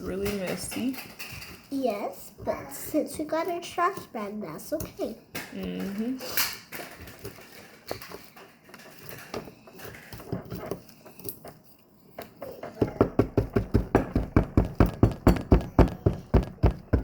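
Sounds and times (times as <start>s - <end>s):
tools scraping plaster: 0.0s - 16.2s
chisel knocking on plaster: 12.6s - 17.0s.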